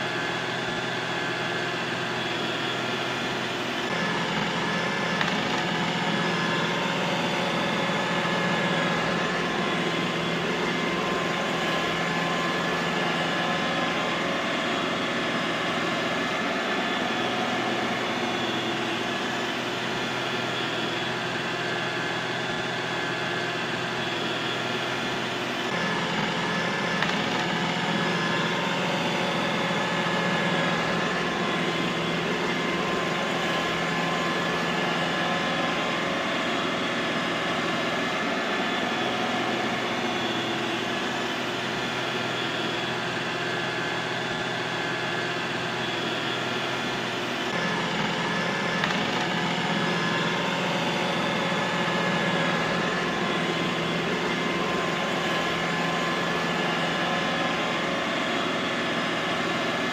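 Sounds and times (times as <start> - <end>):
robot vacuum cleaner whirring: 0.0 - 59.9.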